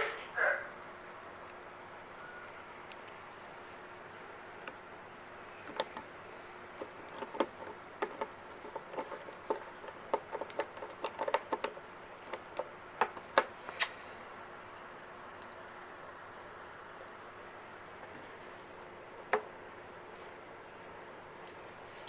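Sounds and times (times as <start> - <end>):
faint steady hum: 0.0 - 22.0
small plastic and metal clicks: 1.4 - 3.2, 6.8 - 14.0.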